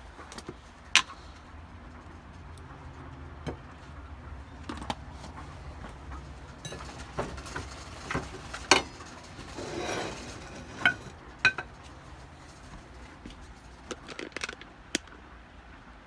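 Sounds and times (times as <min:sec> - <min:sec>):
scraping rustle: 0:04.9 - 0:14.2
dishes and utensils clinking: 0:05.2 - 0:13.4.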